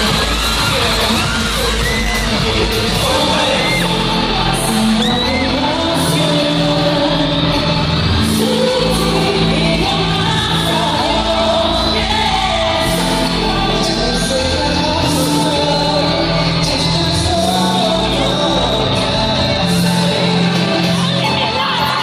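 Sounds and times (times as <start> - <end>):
fans screaming and shouting: 0.0 - 22.0
singing over pop backing track: 0.0 - 22.0.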